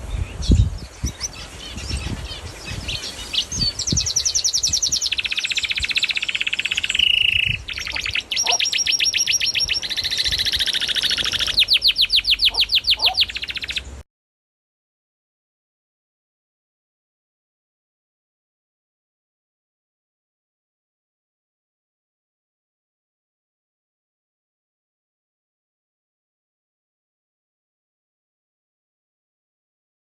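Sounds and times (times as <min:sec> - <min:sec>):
small birds chirping and trilling: 0:00.0 - 0:14.0.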